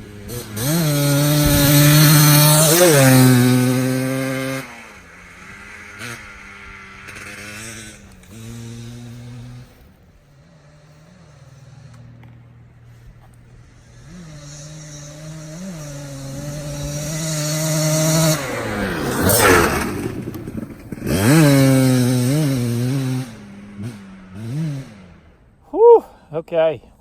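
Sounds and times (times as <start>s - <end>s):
dirt bike engine revving: 0.0s - 25.7s.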